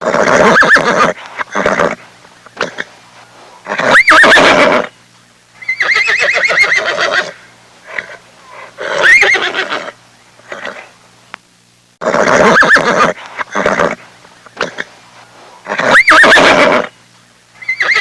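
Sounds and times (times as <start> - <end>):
horse whinnying: 0.0 - 2.0, 3.7 - 4.9, 5.6 - 7.4, 8.8 - 10.8, 12.0 - 14.0, 15.7 - 16.9, 17.6 - 18.0.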